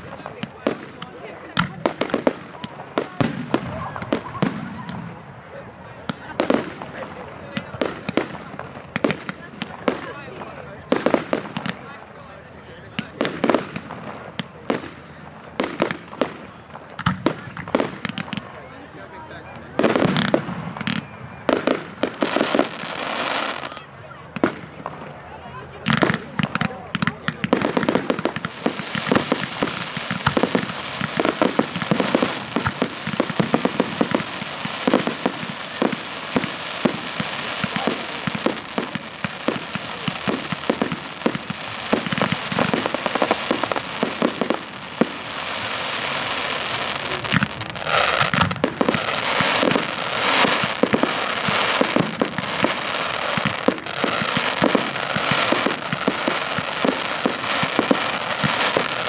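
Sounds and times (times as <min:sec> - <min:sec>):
firework bangs and cracks: 0:00.0 - 0:59.0
firework crackling: 0:00.0 - 0:59.0.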